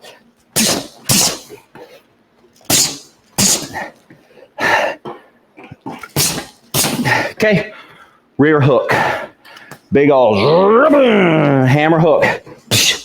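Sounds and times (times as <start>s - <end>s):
forceful hissed exhales: 2.7s - 3.9s.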